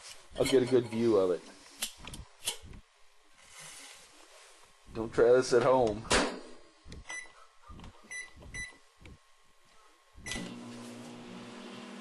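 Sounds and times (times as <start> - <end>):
microwave running hum: 4.8 - 12.0.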